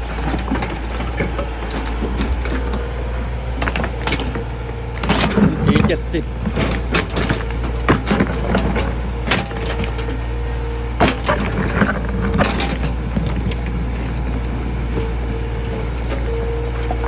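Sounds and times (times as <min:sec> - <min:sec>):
mini excavator running: 0:00.0 - 0:17.0
steady whine: 0:00.0 - 0:17.0.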